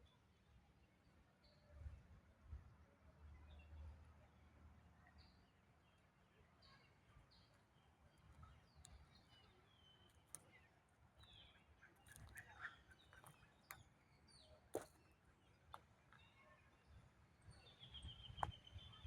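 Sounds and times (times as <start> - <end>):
small birds chirping: 6.6 - 19.0.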